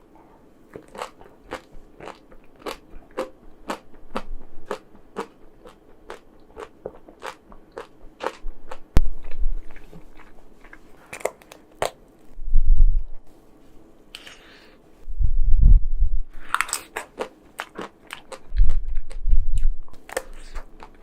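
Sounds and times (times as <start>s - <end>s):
low rumble: 12.3s - 13.3s, 15.0s - 16.6s, 18.4s - 20.0s.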